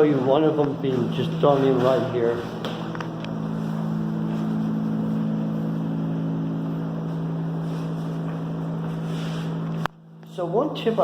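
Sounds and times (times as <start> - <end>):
low mechanical hum: 0.0 - 11.0.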